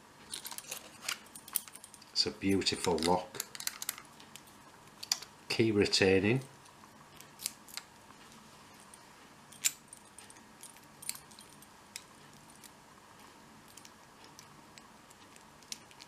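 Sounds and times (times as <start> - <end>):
keys jingling: 9.5 - 11.7.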